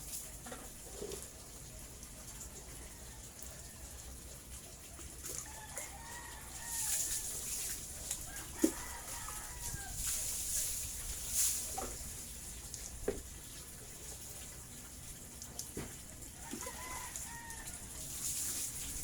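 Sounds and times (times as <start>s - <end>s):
rooster crowing: 2.7s - 4.1s, 5.4s - 7.4s, 8.2s - 10.2s, 16.3s - 18.2s.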